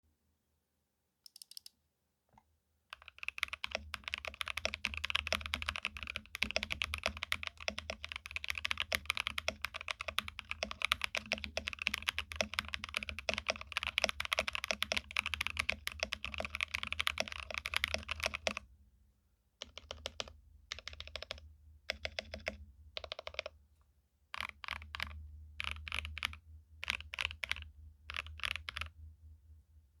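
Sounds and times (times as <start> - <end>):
mechanical keyboard typing: 1.3 - 1.7, 2.9 - 18.6, 19.6 - 23.6, 24.4 - 28.9.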